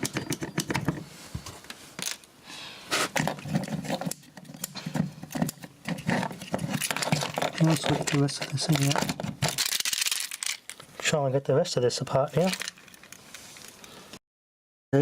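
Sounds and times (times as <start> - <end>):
small parts clicking and rattling: 3.2 - 11.1, 12.3 - 13.9.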